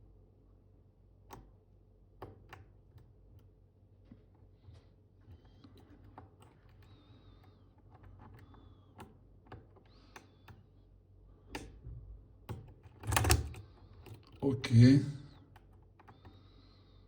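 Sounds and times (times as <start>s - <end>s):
lock pick clicking and scraping: 12.5s - 14.4s.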